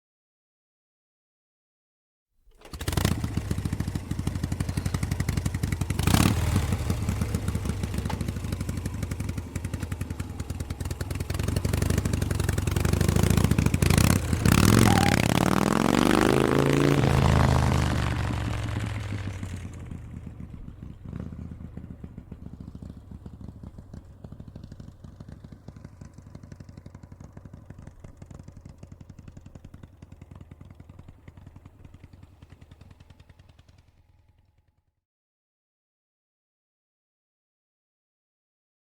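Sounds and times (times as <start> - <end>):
motorcycle engine passing by: 2.7 - 34.1.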